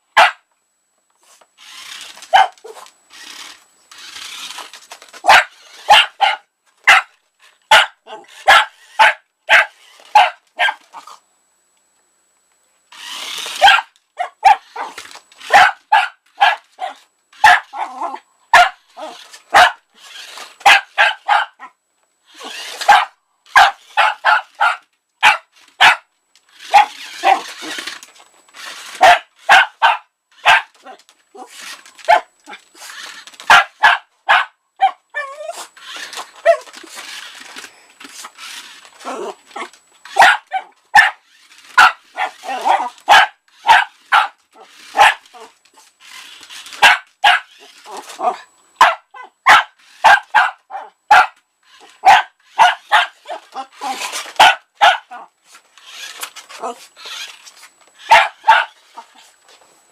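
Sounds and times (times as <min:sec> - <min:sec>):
small dog barking: 0:00.2 - 0:00.4, 0:02.3 - 0:02.8, 0:05.2 - 0:07.1, 0:07.7 - 0:11.1, 0:13.6 - 0:19.8, 0:20.6 - 0:21.8, 0:22.4 - 0:26.1, 0:26.7 - 0:27.6, 0:29.0 - 0:32.6, 0:33.5 - 0:35.5, 0:36.4 - 0:36.7, 0:39.1 - 0:45.5, 0:46.8 - 0:55.3, 0:58.0 - 0:59.2.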